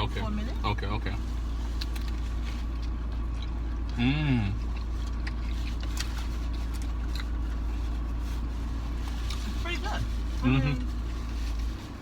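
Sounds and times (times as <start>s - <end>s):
chewing crunchy food: 1.3s - 9.6s
person humming mmm: 4.0s - 4.6s.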